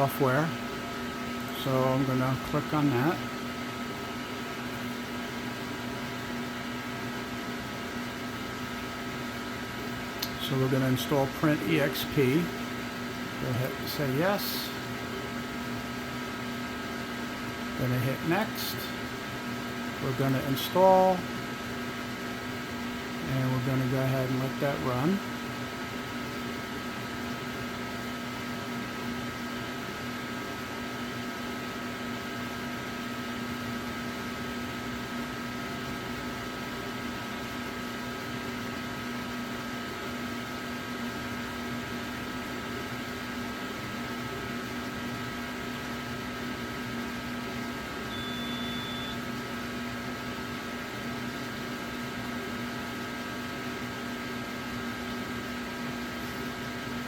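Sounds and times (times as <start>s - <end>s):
machine hum with pitched tones: 42.2s - 57.0s.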